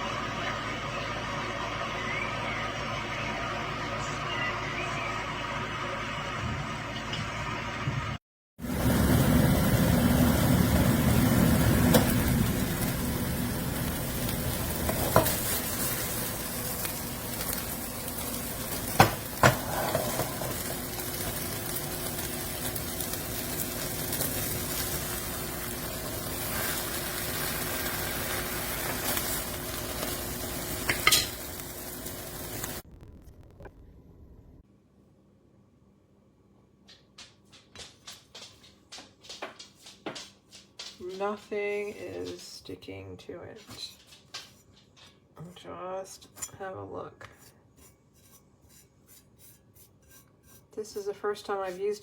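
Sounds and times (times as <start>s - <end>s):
eggs sizzling in a frying pan: 8.6s - 32.9s.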